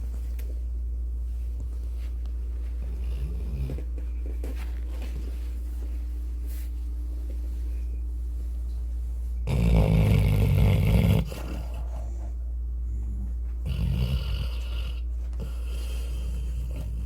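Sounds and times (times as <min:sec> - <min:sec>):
steady low hum: 0:00.0 - 0:17.0
dog snoring: 0:02.9 - 0:03.9, 0:09.4 - 0:11.9, 0:12.9 - 0:17.0.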